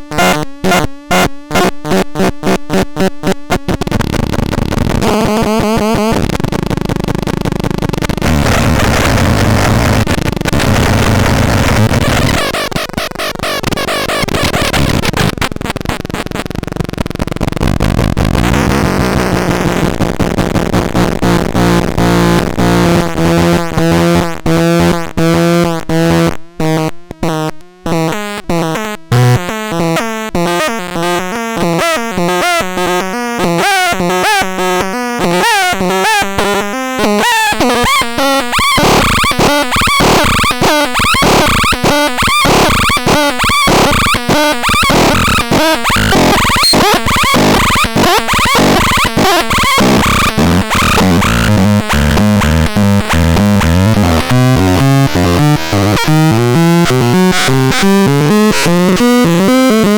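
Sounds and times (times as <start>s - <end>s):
distorted noisy synth wash: 3.7s - 24.8s, 37.2s - 59.9s
synthesizer staccato notes: 37.7s - 59.9s.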